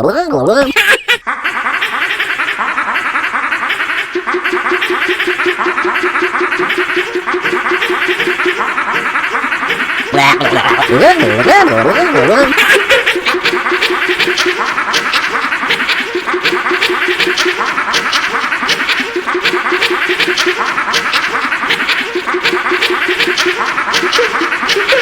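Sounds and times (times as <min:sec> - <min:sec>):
chopped cartoon vocal sample: 0:04.1 - 0:25.0
fast percussive beat: 0:04.2 - 0:25.0.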